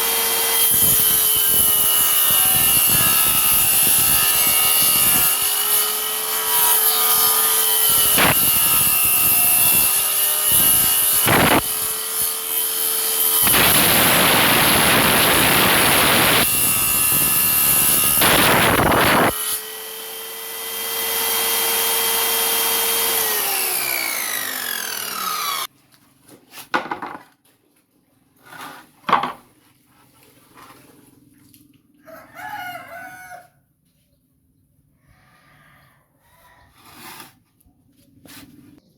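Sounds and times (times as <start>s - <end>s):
saw winding down: 0.0s - 25.7s
table saw cutting wood: 0.0s - 25.7s.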